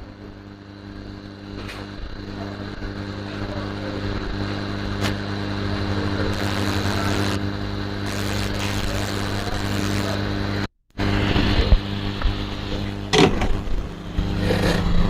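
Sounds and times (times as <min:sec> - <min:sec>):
hot air blower hissing: 0:00.0 - 0:15.0.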